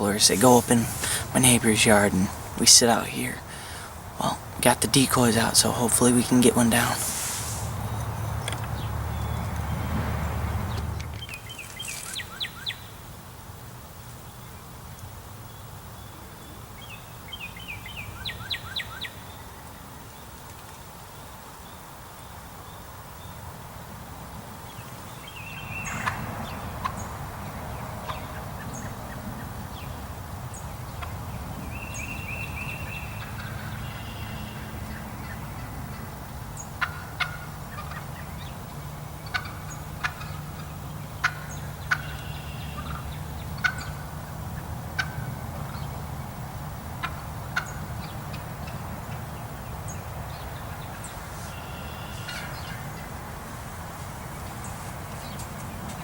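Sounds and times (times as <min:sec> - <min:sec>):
turkey gobbling: 0:25.9 - 0:27.1, 0:33.0 - 0:36.1, 0:36.7 - 0:38.4, 0:39.2 - 0:45.8, 0:47.0 - 0:48.8, 0:51.6 - 0:53.1.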